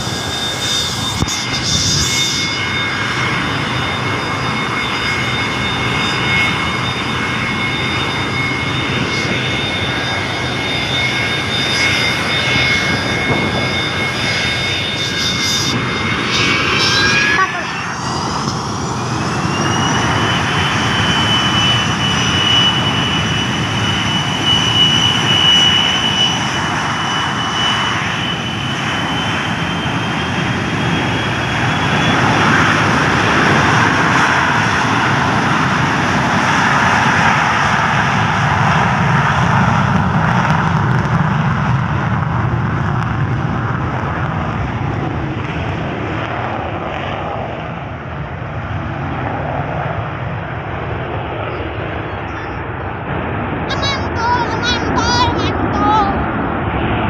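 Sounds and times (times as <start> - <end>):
high engine whine: 0.0 - 57.0
jet engine roar: 0.0 - 57.0.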